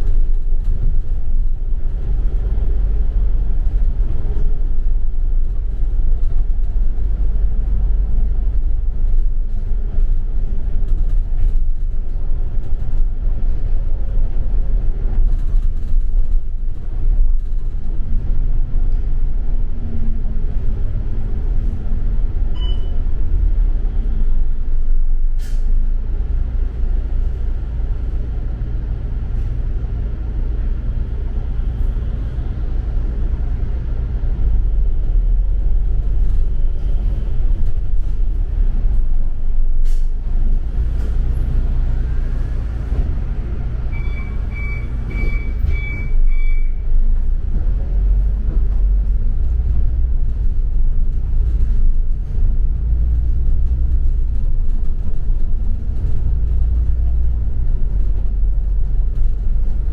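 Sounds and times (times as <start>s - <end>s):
bus engine and road rumble: 0.0s - 59.9s
short high beeps: 22.5s - 23.0s, 43.9s - 46.8s.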